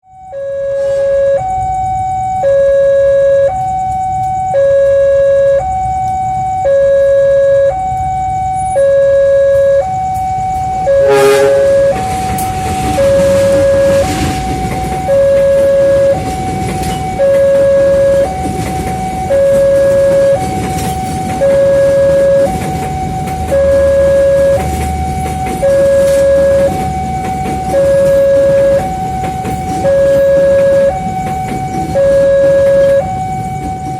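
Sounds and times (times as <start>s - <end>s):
two-tone warning siren: 0.0s - 33.9s.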